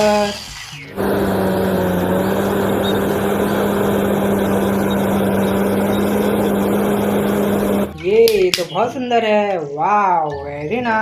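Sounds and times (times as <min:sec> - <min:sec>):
bulldozer engine idling: 0:00.9 - 0:07.9.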